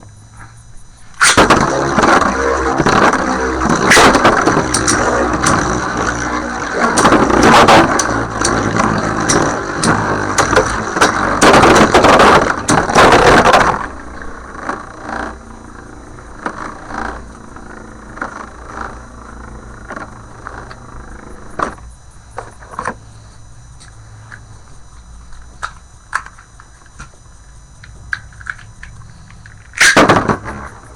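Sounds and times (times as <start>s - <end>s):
spinning tops clattering: 1.2s - 13.8s
spinning top whir: 1.2s - 21.8s.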